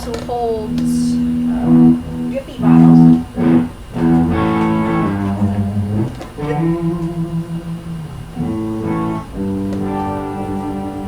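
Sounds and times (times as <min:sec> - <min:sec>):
guitar background music: 0:00.0 - 0:11.0.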